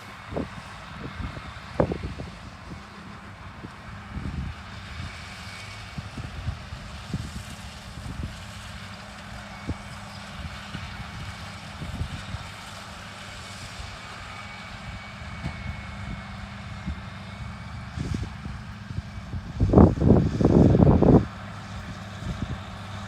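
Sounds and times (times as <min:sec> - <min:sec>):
tractor diesel engine droning: 0:00.0 - 0:23.0.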